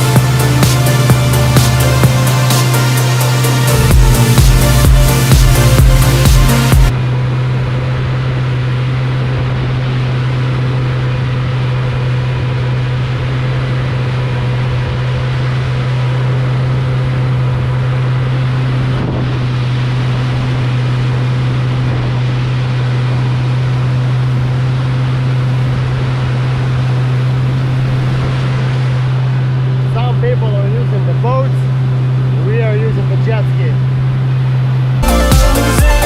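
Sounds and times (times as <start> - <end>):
water noise: 0.0 - 35.8
watercraft engine drone: 0.0 - 36.0
wind noise: 3.7 - 29.9.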